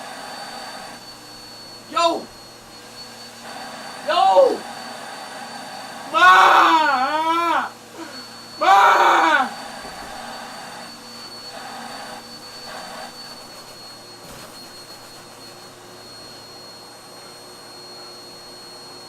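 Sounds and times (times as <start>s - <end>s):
vacuum cleaner whining: 0.0s - 19.0s.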